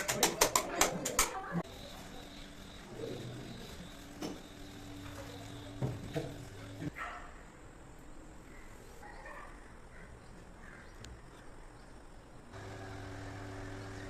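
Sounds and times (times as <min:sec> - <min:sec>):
faint chirps: 0:01.6 - 0:06.9
low motor hum: 0:01.6 - 0:06.9, 0:12.5 - 0:14.0.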